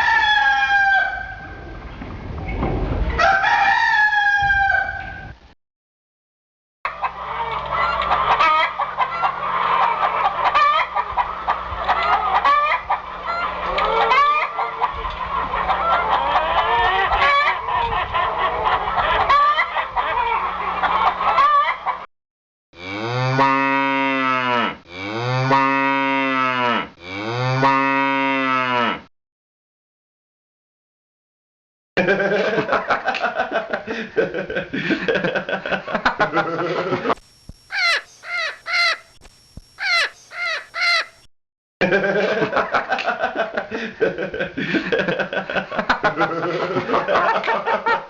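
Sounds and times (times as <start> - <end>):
birds clucking and squawking: 6.9 - 22.1, 34.7 - 41.3, 44.6 - 48.0.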